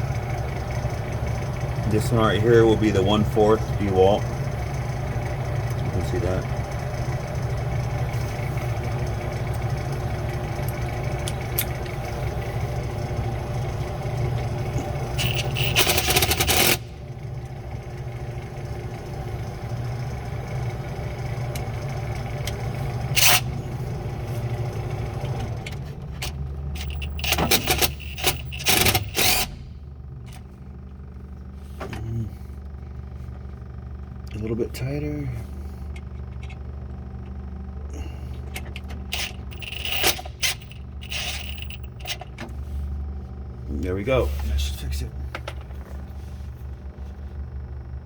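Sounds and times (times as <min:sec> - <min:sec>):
steady mechanical hum: 0:00.0 - 0:48.0
socket tool scraping and clicking: 0:15.2 - 0:16.8, 0:26.8 - 0:29.6, 0:39.1 - 0:42.2.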